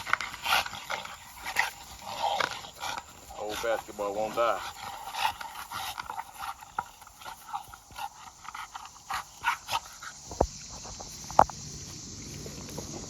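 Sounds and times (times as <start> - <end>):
dog panting: 0.0 - 10.4.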